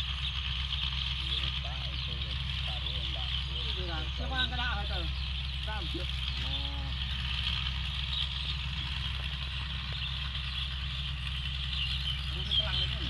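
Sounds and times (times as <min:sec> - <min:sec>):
combine harvester engine running: 0:00.0 - 0:13.0.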